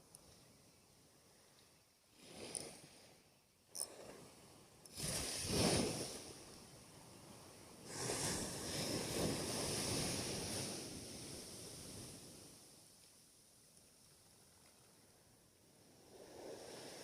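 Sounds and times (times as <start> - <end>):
sea waves washing onto shore: 4.9 - 12.8.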